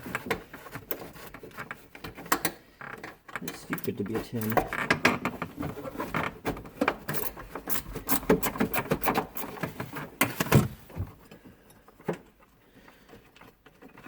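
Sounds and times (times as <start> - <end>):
wrench clicking on metal nut: 7.1 - 9.6.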